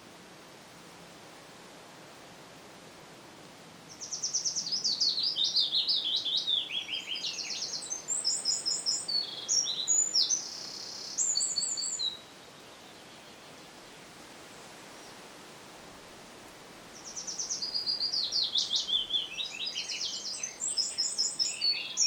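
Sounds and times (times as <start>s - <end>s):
steady hiss: 0.0s - 22.0s
songbird singing: 3.9s - 13.9s, 16.9s - 22.0s.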